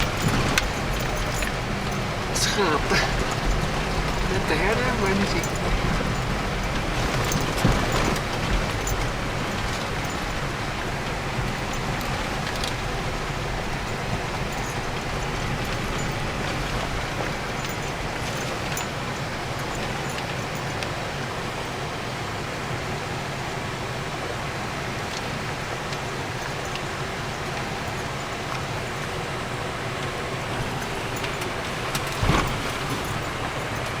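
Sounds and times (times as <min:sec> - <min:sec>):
tyres rushing on track: 0:00.0 - 0:22.0
vehicle engine drone: 0:00.0 - 0:34.0.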